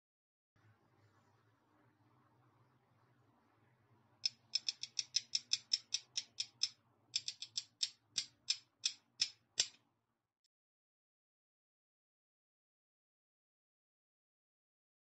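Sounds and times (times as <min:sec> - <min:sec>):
rapid mechanical clicks: 0:04.2 - 0:09.8.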